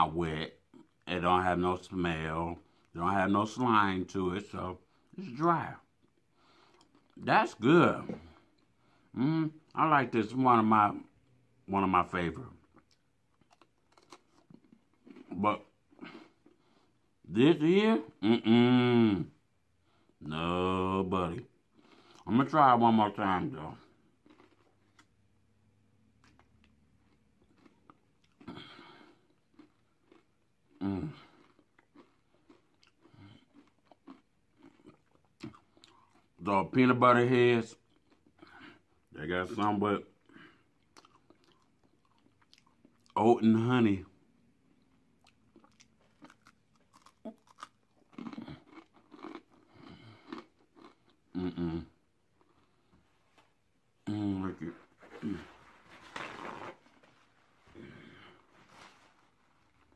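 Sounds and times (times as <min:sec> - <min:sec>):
chewing crunchy granola bar: 0:12.1 - 0:17.0, 0:21.3 - 0:25.2, 0:26.1 - 0:36.5, 0:40.2 - 0:43.2, 0:44.7 - 0:52.9
person humming: 0:18.2 - 0:19.3, 0:51.4 - 0:51.9.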